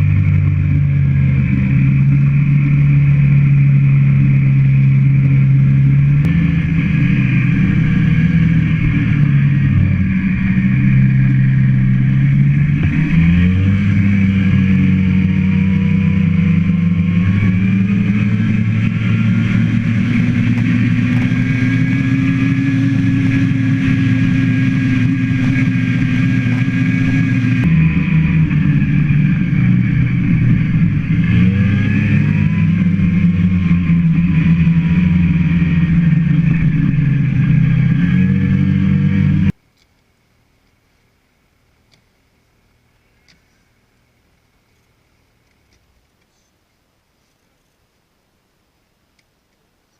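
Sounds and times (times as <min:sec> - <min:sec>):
vehicle engine revving: 0:00.0 - 0:39.6.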